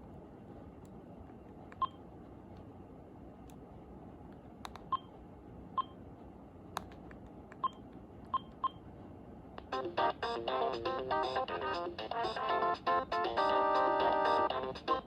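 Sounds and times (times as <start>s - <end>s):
phone key clicks: 6.8s - 7.7s.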